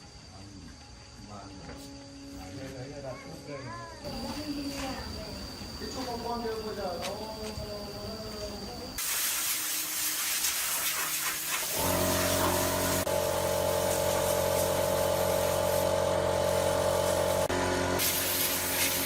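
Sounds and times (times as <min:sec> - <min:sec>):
steady hiss: 0:04.1 - 0:19.0
motor humming: 0:11.7 - 0:19.0.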